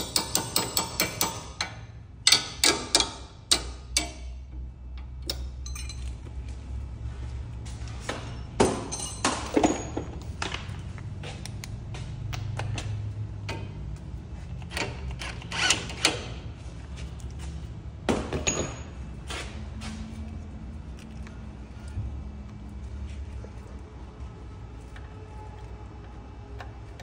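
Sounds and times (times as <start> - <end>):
steady low hum: 0.0 - 27.0
metallic clanks of tools: 5.0 - 6.2, 8.6 - 10.5, 18.3 - 19.0.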